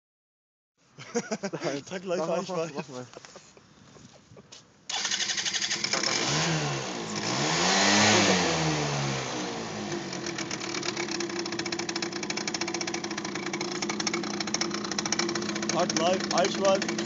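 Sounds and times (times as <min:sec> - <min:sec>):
scooter engine idling with rattle: 0:04.9 - 0:17.0
scooter engine revving: 0:04.9 - 0:17.0.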